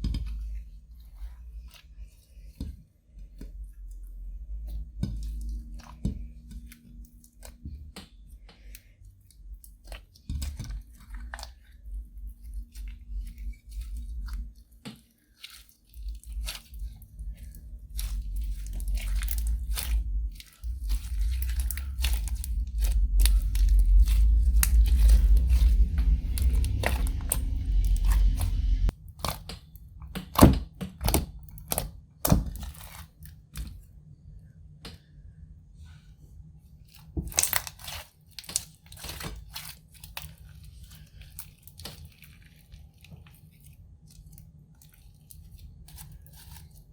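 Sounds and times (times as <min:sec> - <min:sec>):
hands kneading sticky slime: 0:00.0 - 0:34.0, 0:36.7 - 0:46.9
slime crackling and popping: 0:15.4 - 0:33.3, 0:37.0 - 0:43.4.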